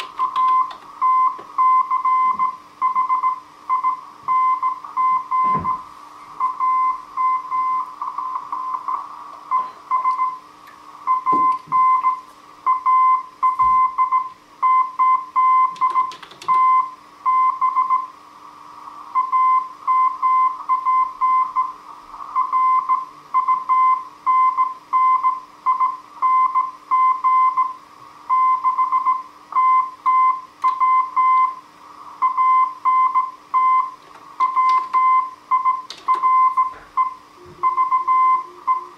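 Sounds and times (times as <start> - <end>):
morse code tone: 32.2 - 38.9.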